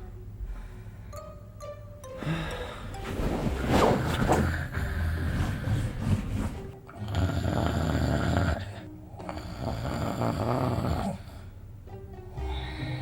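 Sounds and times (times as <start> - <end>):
quiet breathing: 0.4 - 1.4, 11.0 - 11.7, 12.3 - 13.0
person snoring: 6.9 - 11.4.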